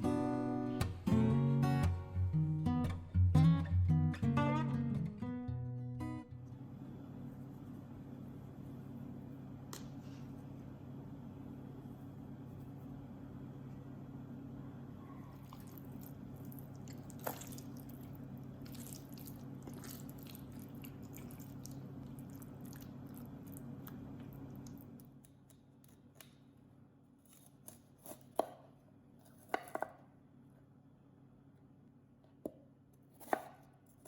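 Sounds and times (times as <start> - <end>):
knife chopping on board: 27.7 - 28.6, 29.4 - 30.0, 33.2 - 33.6.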